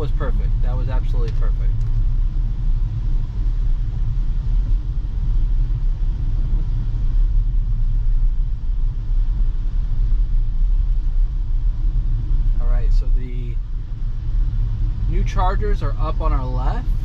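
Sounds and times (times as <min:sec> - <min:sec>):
faint hiss of heavy rain: 0:00.0 - 0:17.0
tyres rumbling on wet road: 0:00.0 - 0:17.0.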